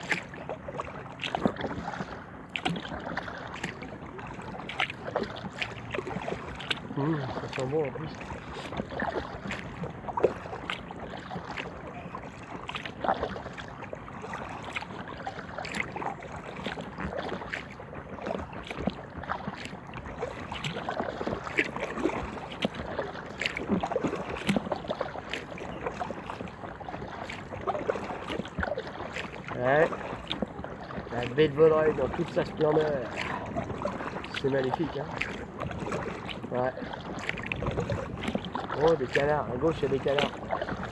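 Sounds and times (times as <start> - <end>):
kayak paddle splashing: 0.0 - 40.9.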